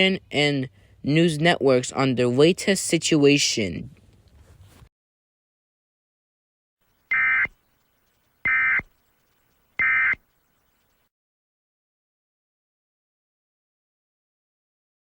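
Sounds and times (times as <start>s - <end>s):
buzzing digital data tones: 6.8s - 11.1s.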